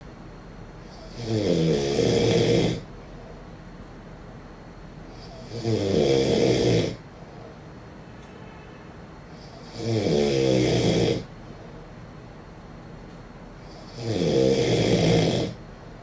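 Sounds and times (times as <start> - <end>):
person snoring: 1.0 - 2.8, 9.5 - 11.3, 13.8 - 15.6.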